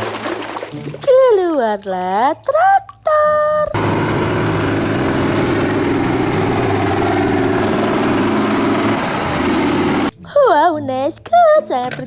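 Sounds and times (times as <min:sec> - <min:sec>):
tractor engine idling: 0:03.8 - 0:10.1.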